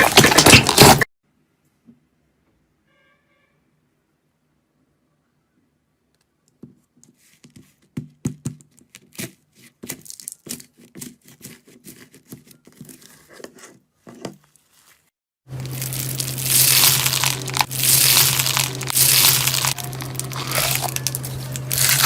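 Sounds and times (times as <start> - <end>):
slime crackling and popping: 15.5 - 22.0.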